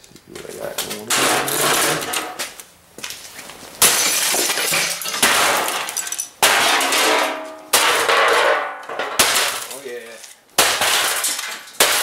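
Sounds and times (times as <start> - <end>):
plastic housing being smashed: 1.1 - 2.4, 3.8 - 9.8.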